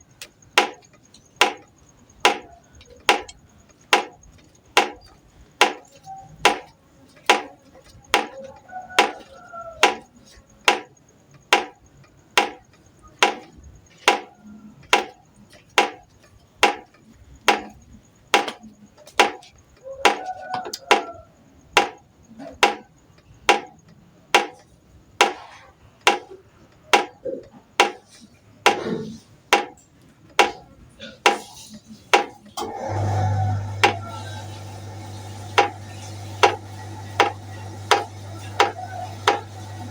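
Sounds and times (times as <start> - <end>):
knife chopping on cutting board: 37.2 - 39.4.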